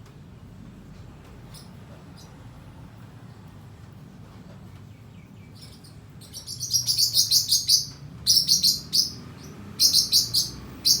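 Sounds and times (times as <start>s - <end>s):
small bird chirping: 1.4s - 2.5s, 4.8s - 11.0s.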